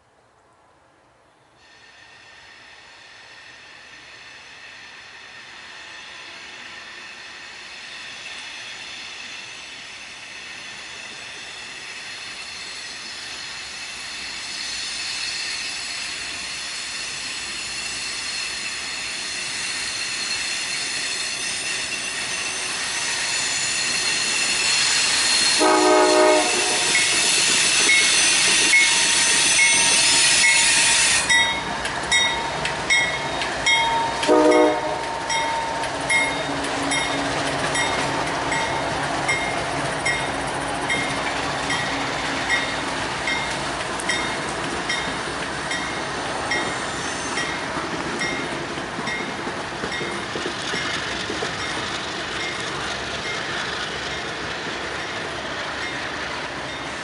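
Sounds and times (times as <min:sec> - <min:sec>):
train approaching: 0:00.0 - 0:57.0
train horn blast: 0:25.6 - 0:27.1, 0:34.2 - 0:35.3
high steady ringing: 0:28.8 - 0:37.2.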